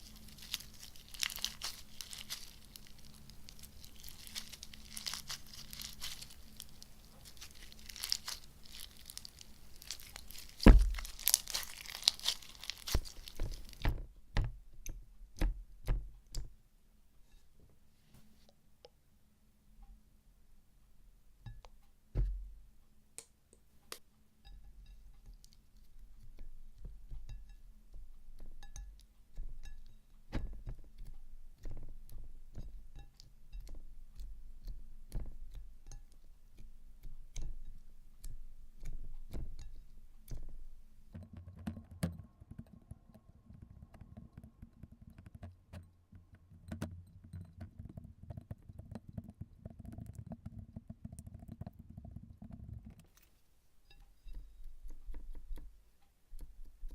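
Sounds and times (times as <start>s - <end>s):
hands squishing slime: 0.0s - 16.5s.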